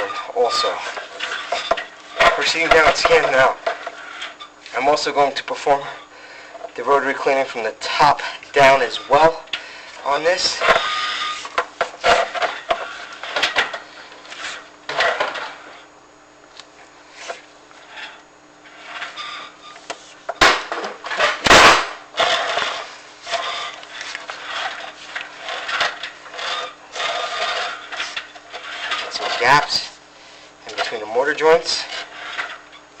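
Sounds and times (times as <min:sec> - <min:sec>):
camera scraping against flue walls: 0:00.0 - 0:04.6, 0:10.3 - 0:15.9, 0:17.1 - 0:21.4, 0:22.2 - 0:31.0, 0:31.8 - 0:32.8
faint steady hum: 0:00.0 - 0:33.0.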